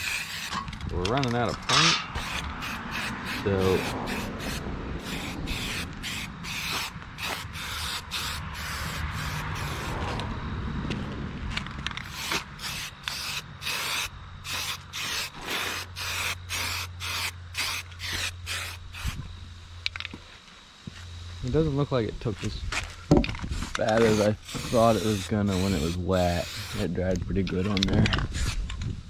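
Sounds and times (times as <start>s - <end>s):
spray can hissing: 0.0s - 0.5s, 2.2s - 10.1s, 12.0s - 19.2s, 23.9s - 27.0s.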